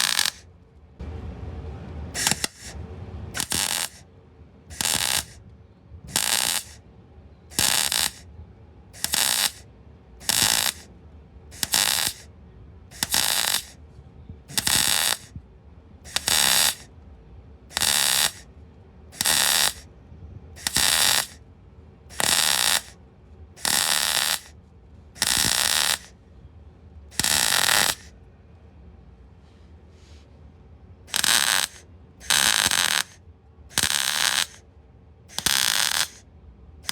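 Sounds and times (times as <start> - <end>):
welding arc crackling bursts: 0.0 - 0.5, 2.2 - 4.0, 4.7 - 5.4, 6.1 - 6.8, 7.5 - 8.2, 9.0 - 9.6, 10.2 - 10.9, 11.5 - 12.3, 12.9 - 13.8, 14.5 - 15.3, 16.1 - 16.9, 17.7 - 18.5, 19.1 - 19.9, 20.6 - 21.4, 22.1 - 23.0, 23.6 - 24.6, 25.2 - 26.1, 27.1 - 28.1, 31.1 - 34.6, 35.3 - 36.2.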